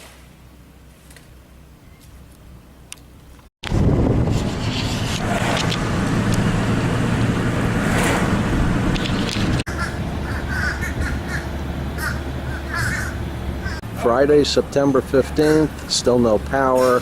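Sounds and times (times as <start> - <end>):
low mechanical hum: 0.0 - 17.0
dense rushing noise: 3.6 - 13.9
crows cawing: 9.7 - 13.8.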